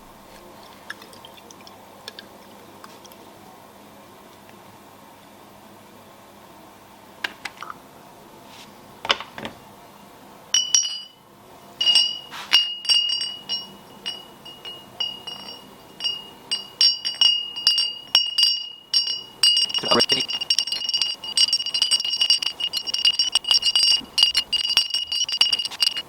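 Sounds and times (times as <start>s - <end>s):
steel bolts clinking: 11.8s - 26.0s.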